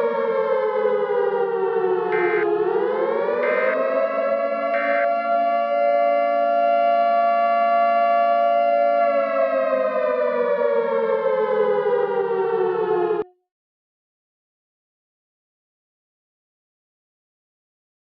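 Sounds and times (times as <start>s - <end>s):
siren winding down: 0.0s - 8.2s, 8.8s - 13.3s.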